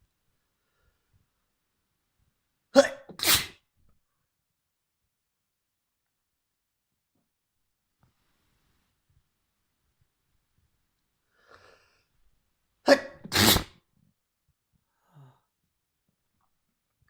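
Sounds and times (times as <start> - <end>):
faint breath: 0.6 - 1.2, 11.2 - 12.2
person sneezing: 2.8 - 3.6, 12.9 - 13.8.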